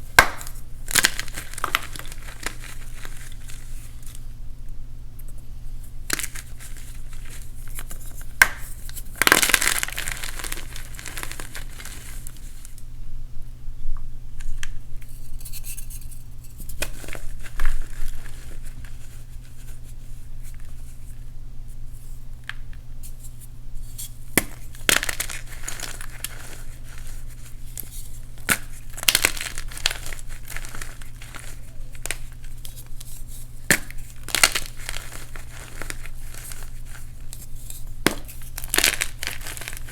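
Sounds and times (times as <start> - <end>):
chalk blocks crunching: 0.2 - 4.2, 6.1 - 12.6, 24.4 - 39.9.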